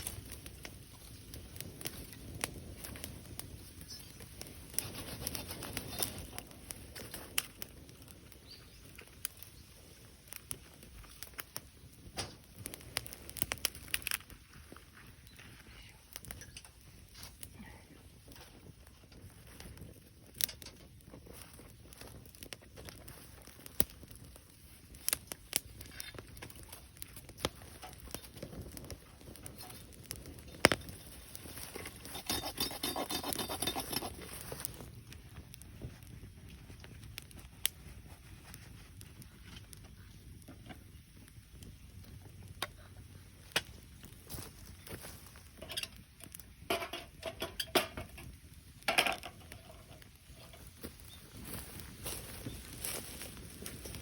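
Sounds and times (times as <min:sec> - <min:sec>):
wood fire crackling and popping: 0:00.0 - 0:54.0
objects knocking and clicking: 0:46.7 - 0:48.3, 0:48.9 - 0:50.6.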